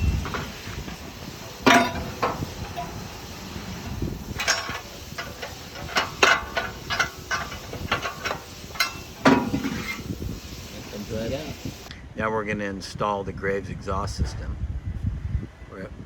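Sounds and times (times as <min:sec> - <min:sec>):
metal exhaust parts clinking: 0:00.0 - 0:11.9.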